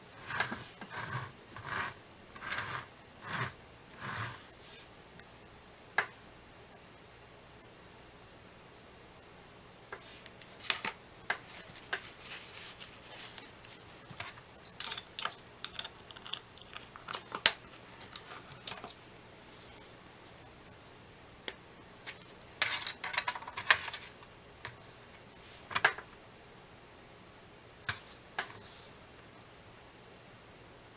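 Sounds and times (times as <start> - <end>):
scratchy rustles: 0.0 - 4.9, 10.0 - 21.3
handling clicks and taps: 13.3 - 19.0.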